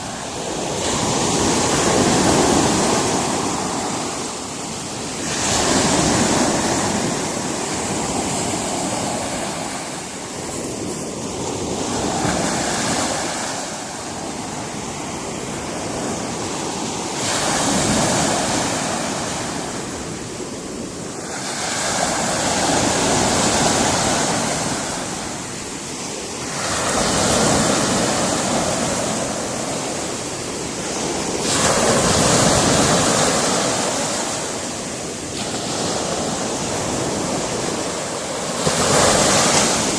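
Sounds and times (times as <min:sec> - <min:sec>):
sea waves breaking on rocks: 0:26.3 - 0:39.9.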